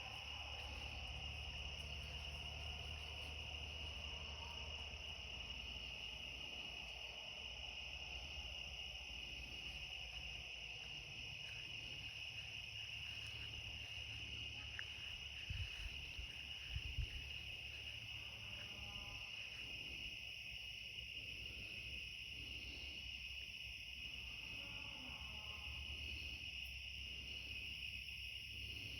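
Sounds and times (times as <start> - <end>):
distant traffic rumble: 0.0 - 18.9
night insects chorus: 0.0 - 28.9.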